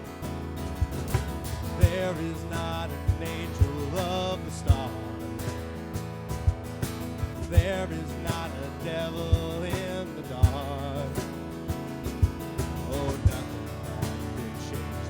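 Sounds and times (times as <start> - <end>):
kick drum hitting: 6.4 - 7.8.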